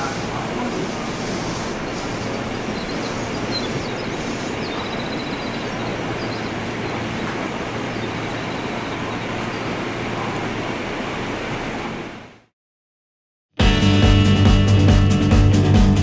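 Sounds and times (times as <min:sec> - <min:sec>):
train rolling on tracks: 0:00.0 - 0:12.4.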